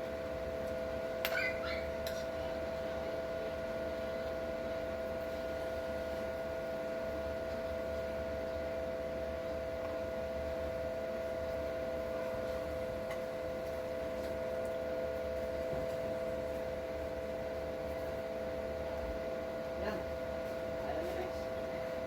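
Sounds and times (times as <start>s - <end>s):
two-tone electrical hum: 0.0s - 22.0s.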